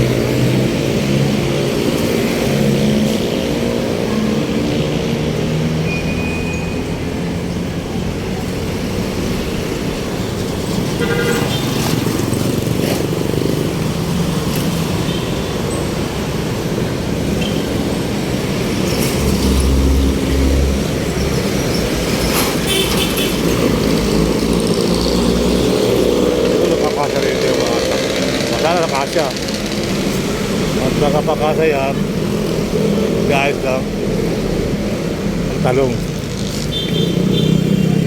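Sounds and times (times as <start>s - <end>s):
traffic engines and road noise: 0.0s - 38.0s
car horn toots: 11.0s - 11.8s, 22.6s - 23.4s.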